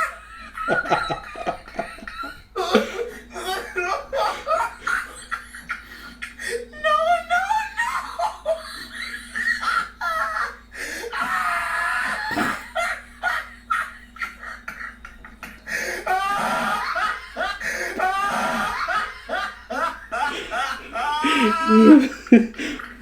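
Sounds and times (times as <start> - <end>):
people laughing: 0.0 - 23.0
people speaking: 20.4 - 22.9.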